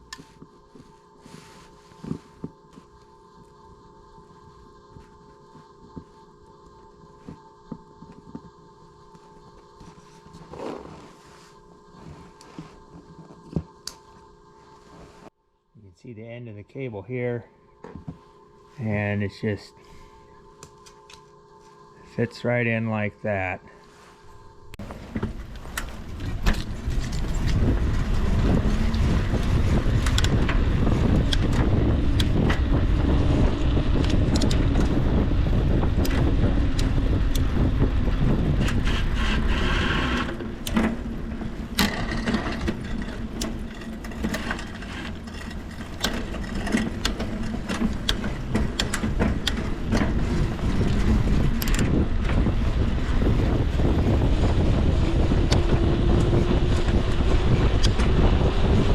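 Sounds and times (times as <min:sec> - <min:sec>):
steady rumble: 0:00.0 - 0:58.9
wind buffeting microphone: 0:24.8 - 0:58.9.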